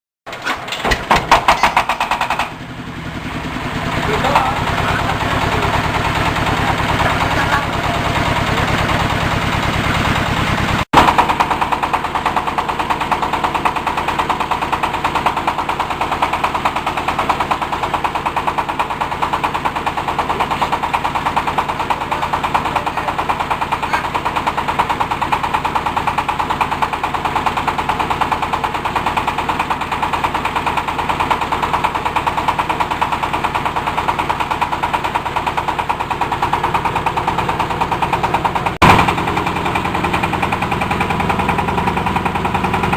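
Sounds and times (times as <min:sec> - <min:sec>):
machine mechanical rattle: 0:00.3 - 0:02.7.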